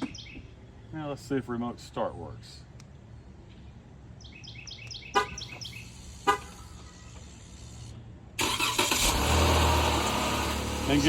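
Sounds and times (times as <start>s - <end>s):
car horn chirps: 5.2s - 5.5s, 6.2s - 6.8s
car engine cranking and running: 6.7s - 11.0s.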